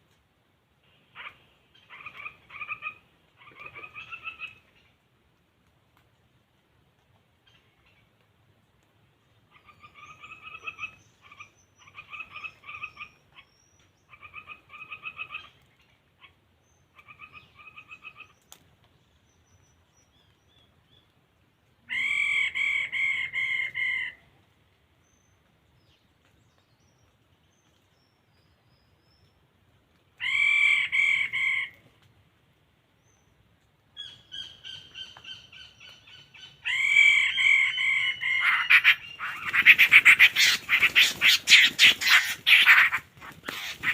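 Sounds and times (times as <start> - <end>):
bird calling harsh notes: 34.0 - 43.9.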